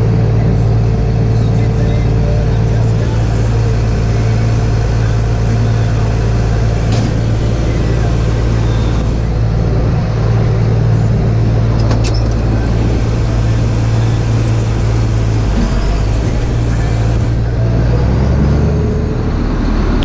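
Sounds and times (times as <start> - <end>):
tractor engine running: 0.0 - 20.0.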